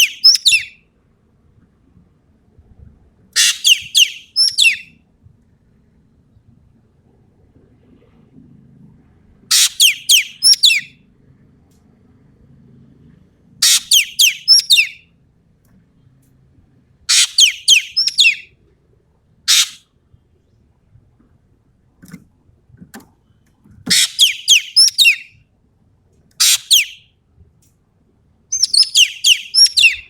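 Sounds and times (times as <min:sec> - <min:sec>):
bird harsh calls: 0:00.0 - 0:00.8, 0:03.4 - 0:04.9, 0:09.5 - 0:10.9, 0:13.6 - 0:15.0, 0:17.1 - 0:18.5, 0:19.5 - 0:19.8, 0:23.9 - 0:25.3, 0:26.4 - 0:27.0, 0:28.5 - 0:30.0.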